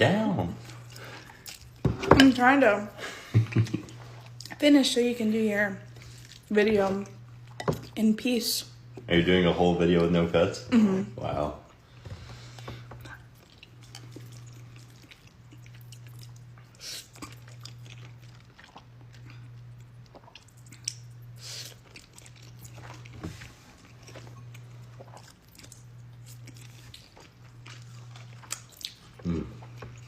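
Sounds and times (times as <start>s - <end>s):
person chewing and crunching food: 0.4s - 2.0s, 3.4s - 4.6s, 5.9s - 8.0s, 11.6s - 30.0s.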